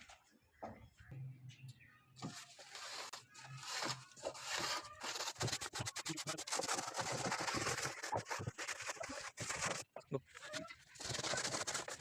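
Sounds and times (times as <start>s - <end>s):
scraping and rubbing strokes: 2.2s - 12.0s.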